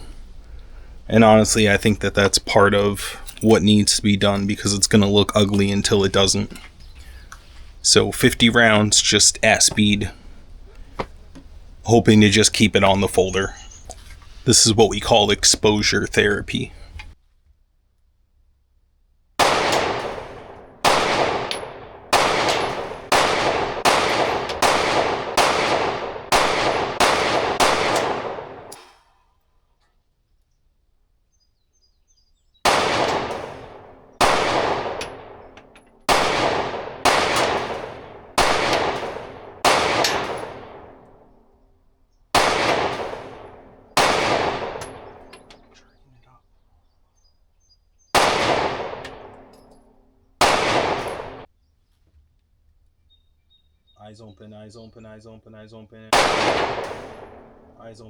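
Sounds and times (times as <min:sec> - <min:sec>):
pistol shots: 0:19.4 - 0:28.9, 0:32.6 - 0:41.4, 0:42.3 - 0:45.8, 0:48.2 - 0:49.8, 0:50.4 - 0:51.5, 0:56.1 - 0:57.8.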